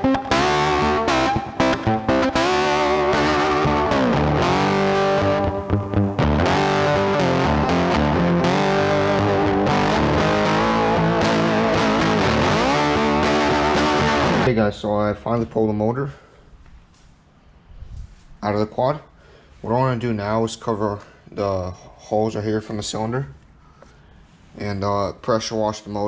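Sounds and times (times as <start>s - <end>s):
distorted electric guitar rock: 0.0s - 14.5s.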